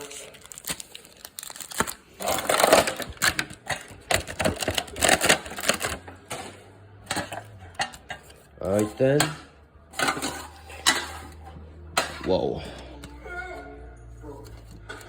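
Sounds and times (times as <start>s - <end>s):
foil packaging crinkling: 0.0s - 6.0s
metal tin clattering: 2.2s - 11.4s.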